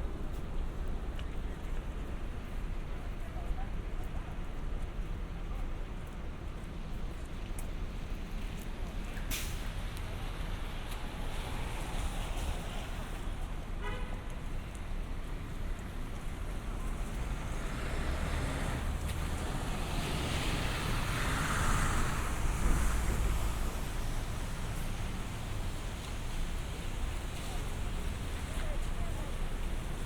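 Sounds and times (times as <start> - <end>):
tyres hissing on wet road: 7.8 - 30.0
vehicle passing close: 17.1 - 24.8.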